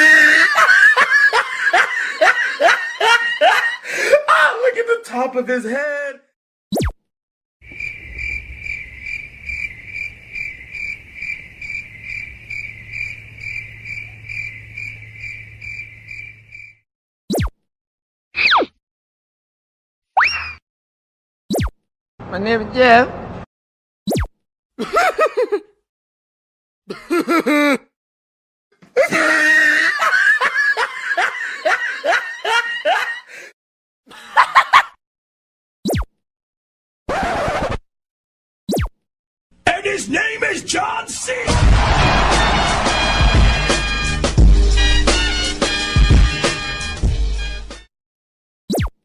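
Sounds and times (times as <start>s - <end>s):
person laughing in bursts: 0.0s - 4.3s, 24.8s - 25.8s, 26.9s - 27.9s, 29.0s - 33.5s, 34.1s - 35.0s
cricket chirping: 7.6s - 16.8s.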